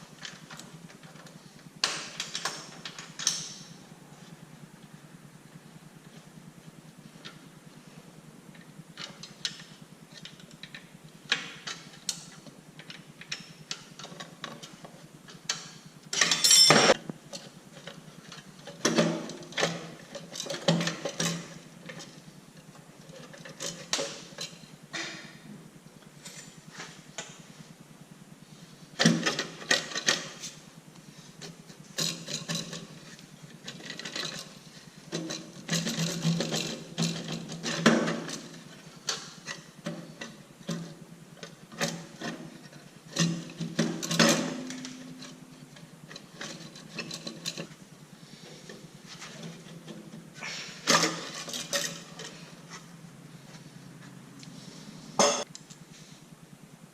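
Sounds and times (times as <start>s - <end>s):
hand tools clicking and clattering: 9.0s - 24.6s, 31.4s - 47.8s, 48.4s - 52.8s.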